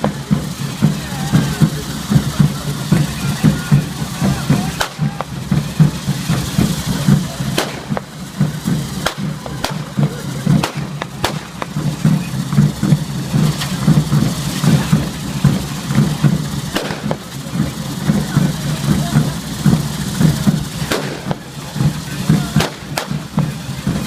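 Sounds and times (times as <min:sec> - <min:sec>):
firecracker bangs: 0:00.0 - 0:24.0
steady low din: 0:00.0 - 0:24.0.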